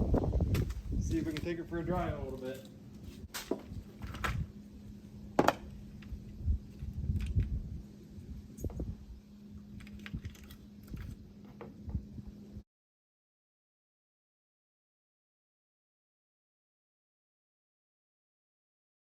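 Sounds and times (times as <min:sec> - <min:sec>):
steady low hum: 0:00.0 - 0:12.6.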